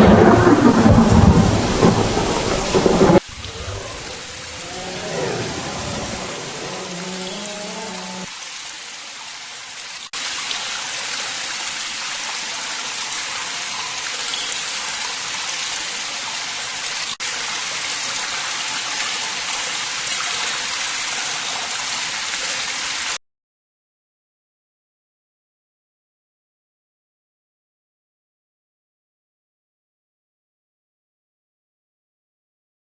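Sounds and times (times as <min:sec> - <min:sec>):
heavy rain hissing: 0:00.0 - 0:08.5.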